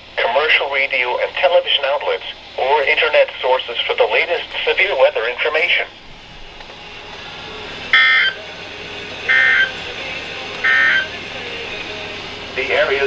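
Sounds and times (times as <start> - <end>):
faint radio hiss: 0.0 - 13.0
screeching digital data bursts: 7.3 - 13.0.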